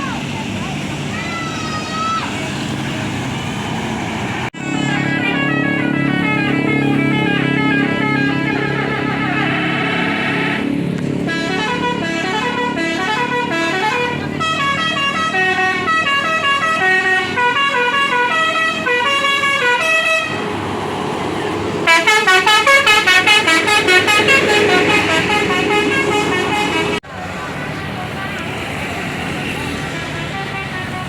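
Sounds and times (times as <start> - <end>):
musical bus air horn: 4.6 - 20.5, 21.8 - 27.0, 29.8 - 31.0.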